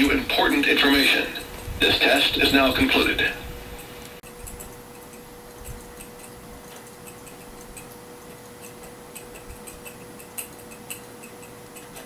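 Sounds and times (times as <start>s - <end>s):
faint steady hum: 0.0s - 12.0s
faint irregular ticks: 3.8s - 12.0s.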